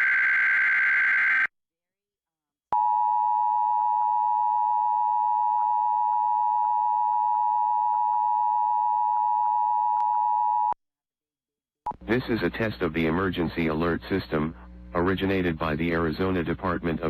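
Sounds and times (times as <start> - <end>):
two-tone alarm: 0.0 - 1.5.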